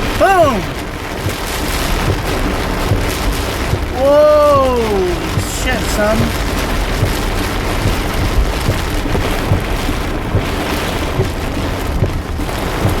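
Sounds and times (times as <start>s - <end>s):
heavy rain and wind on car: 0.0s - 13.0s
low thumps: 0.0s - 13.0s.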